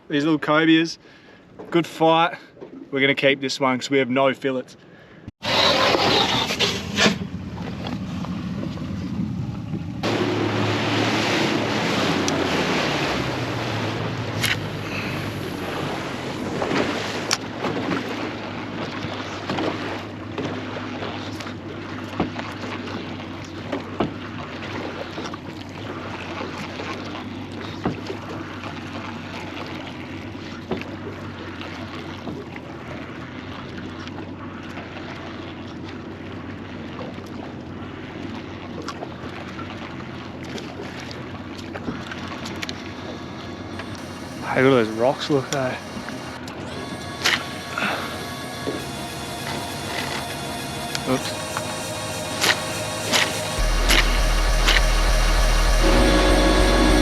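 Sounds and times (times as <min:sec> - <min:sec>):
boat motor humming: 0:05.4 - 0:57.0
water rushing past hull: 0:05.4 - 0:57.0.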